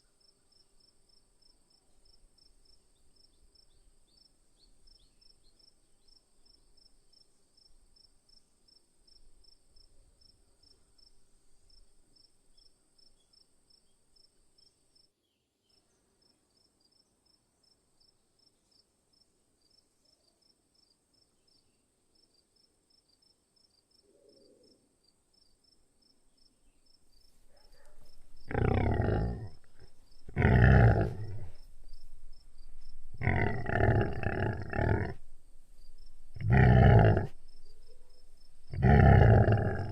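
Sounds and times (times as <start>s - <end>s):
insects trilling: 26.8s - 39.9s
rough animal calls: 27.7s - 31.8s, 32.7s - 35.4s, 36.1s - 39.9s.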